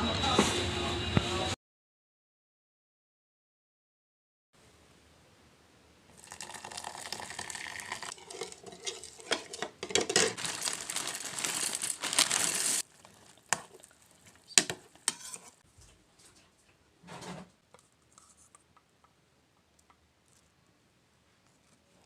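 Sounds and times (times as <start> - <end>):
food frying hiss: 6.2 - 9.6, 10.4 - 15.6
utensils and dishes clicking: 6.4 - 12.8, 13.4 - 15.6
clinks and knocks: 8.2 - 10.5.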